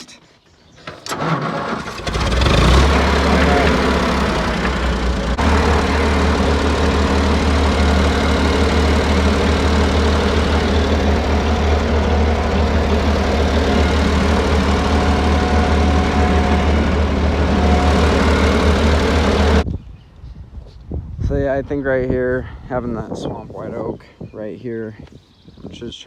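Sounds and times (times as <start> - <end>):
tractor engine running: 0.9 - 19.6.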